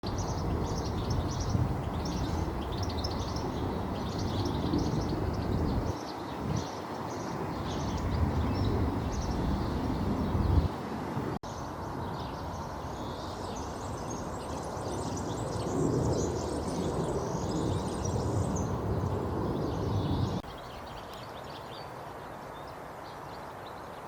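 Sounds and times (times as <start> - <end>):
bird singing high chirps: 0.0 - 10.7.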